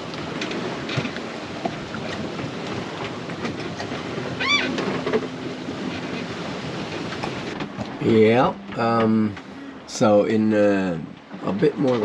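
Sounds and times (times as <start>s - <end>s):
low steady hum: 0.0s - 12.0s
water and wind rushing: 0.0s - 12.0s
small creaks and knocks: 0.2s - 6.3s, 6.9s - 8.0s, 11.2s - 12.0s
short high squeak: 4.4s - 4.8s.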